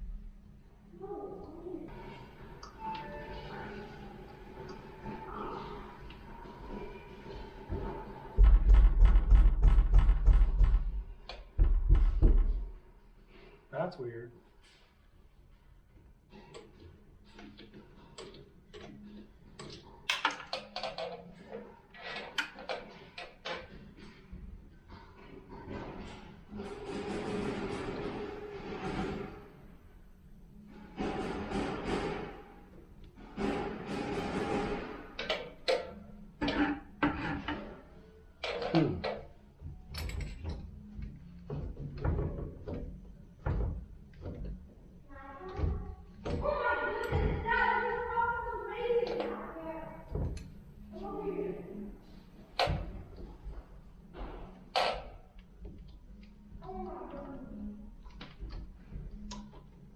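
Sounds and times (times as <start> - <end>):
irregular clicks and knocks: 7.7 - 12.8, 15.9 - 29.3, 33.0 - 47.5.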